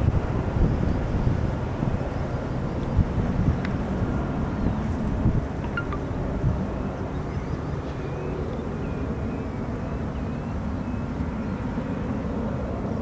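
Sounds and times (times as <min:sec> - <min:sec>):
distant jet engine rumble: 0:00.0 - 0:13.0
faint bird chirps: 0:05.6 - 0:06.1.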